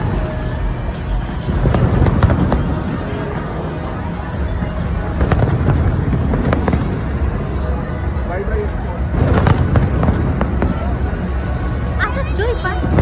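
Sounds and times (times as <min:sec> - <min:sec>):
background music: 0:00.0 - 0:13.0
fireworks booming and cracking: 0:04.5 - 0:07.4.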